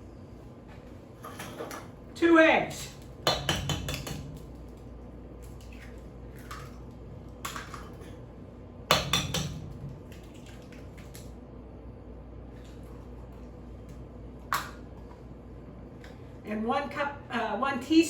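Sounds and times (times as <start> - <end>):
egg knocking on a bowl: 3.2 - 4.6, 8.9 - 10.1.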